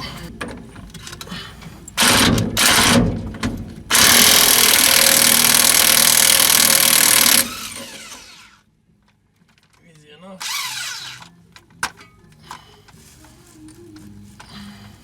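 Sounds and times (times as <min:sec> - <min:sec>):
impact wrench bursts: 0:02.0 - 0:03.3, 0:03.9 - 0:08.6, 0:10.4 - 0:11.3.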